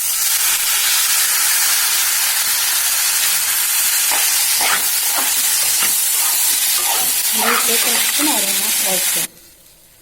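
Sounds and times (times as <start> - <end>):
rice sizzling in a pan: 0.0 - 9.7
spoon scraping a pan: 4.1 - 8.2.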